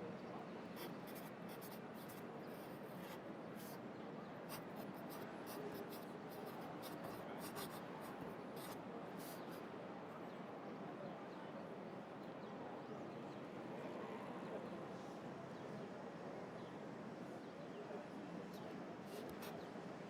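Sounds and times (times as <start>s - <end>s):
pencil scratching on paper: 0.8s - 3.8s, 4.5s - 9.5s.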